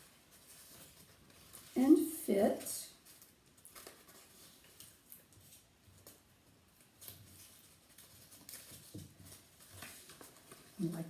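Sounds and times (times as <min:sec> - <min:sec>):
paper rustling and tapping: 0:00.0 - 0:11.0.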